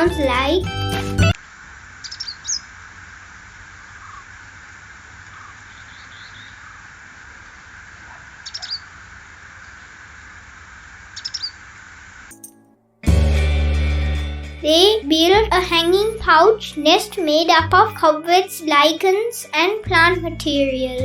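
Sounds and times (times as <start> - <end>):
steady background hiss: 1.4 - 12.3
bird high thin chirps: 2.0 - 2.7, 8.4 - 8.9, 11.2 - 11.6.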